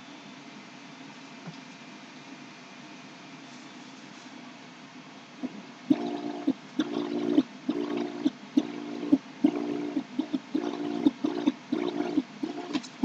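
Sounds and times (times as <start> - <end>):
printer clicks: 5.9 - 13.0
stepper motors whining: 5.9 - 13.0.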